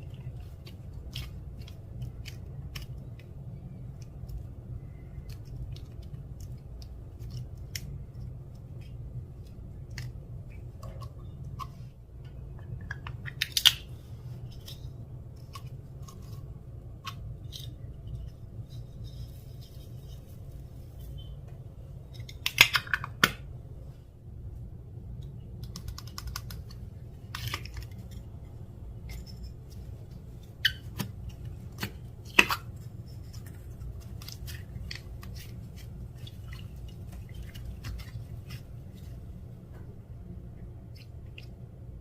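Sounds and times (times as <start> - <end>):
slime clicking and crackling: 0.0 - 11.8, 25.5 - 28.4
steady low hum: 0.0 - 42.0.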